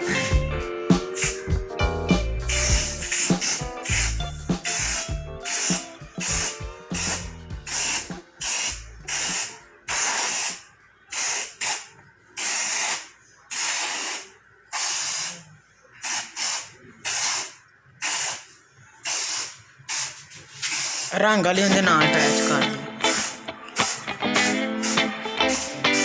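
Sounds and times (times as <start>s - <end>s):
background music with low beat: 0.0s - 10.1s, 21.6s - 26.0s
paint spraying in hissing bursts: 1.1s - 1.5s, 2.4s - 15.4s, 16.0s - 21.2s, 22.2s - 26.0s.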